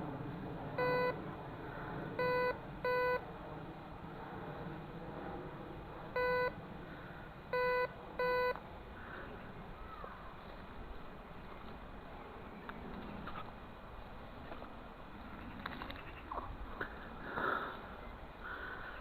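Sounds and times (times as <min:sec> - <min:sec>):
metal detector beeps: 0:00.8 - 0:01.2, 0:02.2 - 0:03.2, 0:06.2 - 0:06.5, 0:07.5 - 0:08.6.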